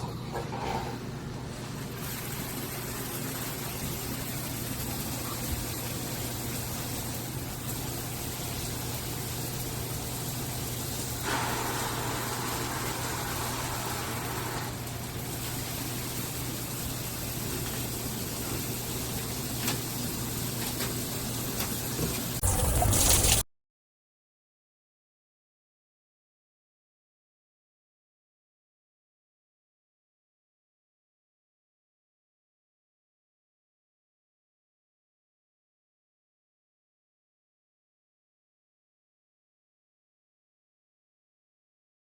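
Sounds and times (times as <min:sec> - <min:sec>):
water spraying from shower head: 0:02.0 - 0:17.6.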